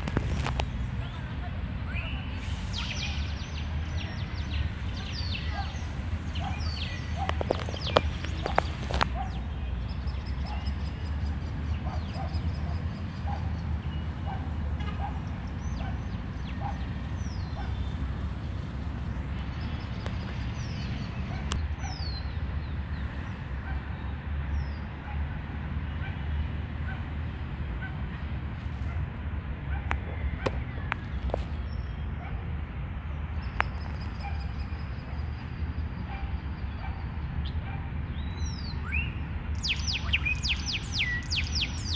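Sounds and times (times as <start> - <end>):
high falling bird chirps: 38.8 - 41.9.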